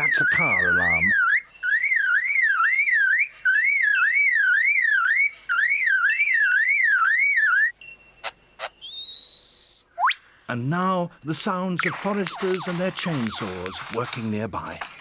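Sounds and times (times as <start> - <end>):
lyrebird mimicking car alarm: 0.0 - 10.1.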